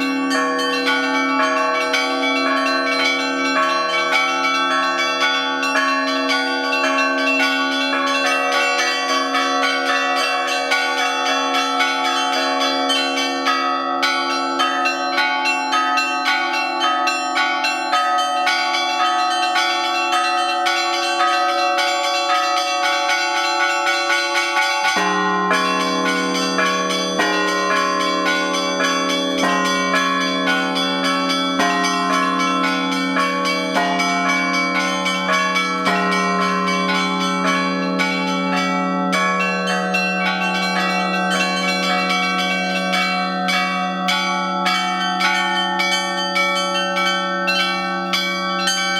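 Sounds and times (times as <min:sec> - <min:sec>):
large bells humming: 0:00.0 - 0:48.9
small church bells striking: 0:00.0 - 0:48.9.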